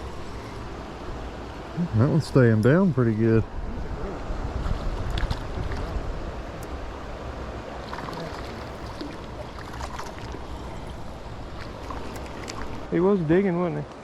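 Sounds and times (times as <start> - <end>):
creek water rushing: 0.0 - 14.0
wind rumbling on microphone: 2.8 - 12.9.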